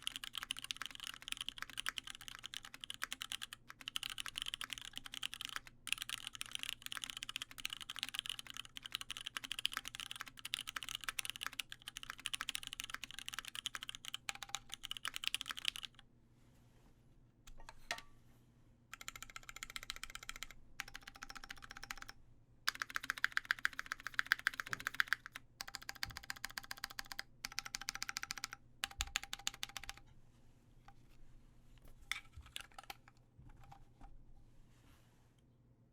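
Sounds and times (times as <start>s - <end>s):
typing on mechanical keyboard: 0.0s - 16.0s, 19.0s - 30.0s, 32.4s - 33.1s.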